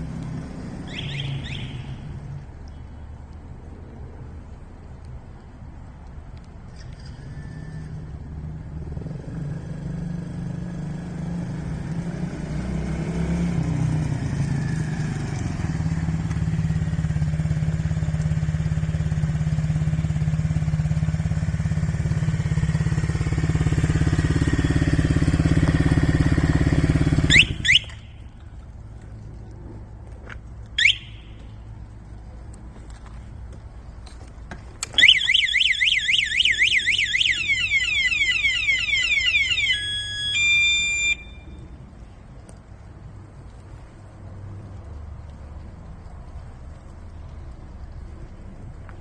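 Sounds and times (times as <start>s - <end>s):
alarm rising chirps: 0.8s - 2.0s, 27.0s - 28.2s, 30.8s - 31.5s, 35.0s - 41.6s
quad engine running: 9.6s - 28.0s.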